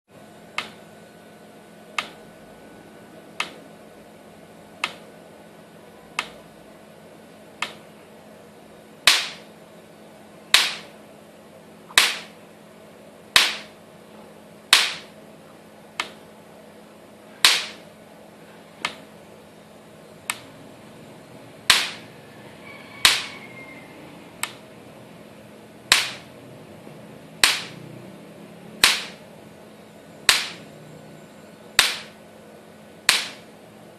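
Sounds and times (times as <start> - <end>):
faint steady hum: 0.1 - 33.9
electric fence snapping: 0.5 - 0.8, 2.0 - 2.2, 4.8 - 5.0, 9.1 - 9.5, 10.5 - 11.0, 11.9 - 12.4, 13.4 - 13.8, 14.7 - 15.2, 17.4 - 17.9, 21.6 - 22.1, 23.0 - 23.3, 24.4 - 24.6, 25.9 - 26.3, 27.4 - 27.9, 28.8 - 29.2, 30.2 - 30.7, 31.8 - 32.2, 33.0 - 33.5.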